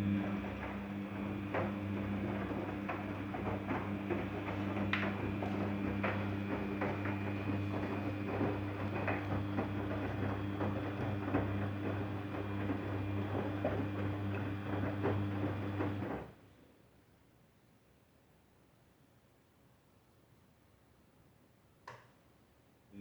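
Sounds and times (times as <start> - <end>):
washing machine motor hum: 0.0 - 16.5.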